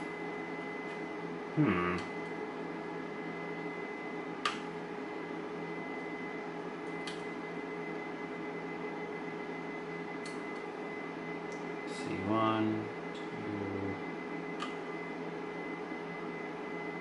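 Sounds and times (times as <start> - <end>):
power supply fan hum and whine: 0.0 - 17.0.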